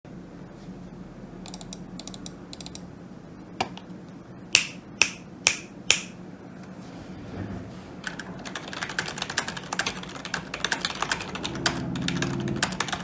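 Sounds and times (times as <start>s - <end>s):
low background hum: 0.1s - 13.0s
loud sharp clicks: 1.5s - 2.8s, 4.6s - 6.2s.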